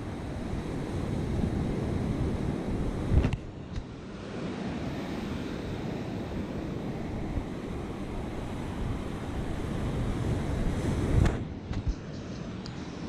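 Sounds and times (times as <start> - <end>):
ocean surf washing: 0.0 - 13.0
wind buffeting microphone: 0.0 - 13.0
small click: 3.2 - 3.9.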